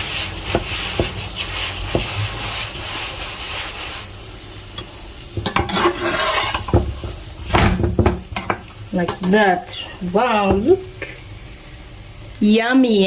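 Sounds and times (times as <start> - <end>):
flatbreads sizzling in oil: 0.0 - 13.0
knocks and scrapes in pan: 0.5 - 2.5, 5.4 - 9.3.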